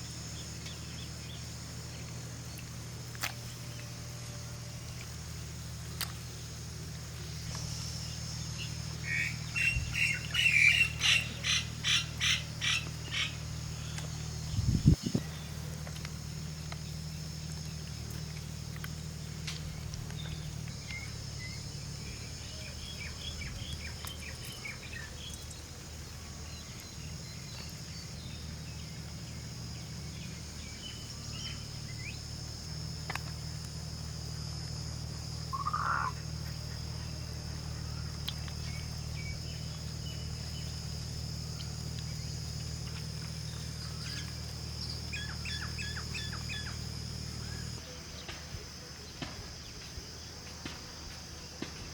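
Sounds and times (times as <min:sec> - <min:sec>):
birds chirping: 0:00.0 - 0:32.4, 0:35.3 - 0:48.4
insect drone: 0:00.0 - 0:51.9
low hum: 0:00.0 - 0:51.9.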